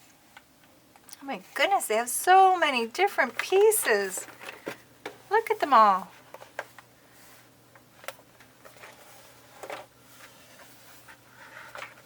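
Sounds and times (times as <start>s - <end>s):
faint room hum: 0.0s - 12.0s
soft plastic clicks and rustles: 3.2s - 5.3s, 6.1s - 12.0s.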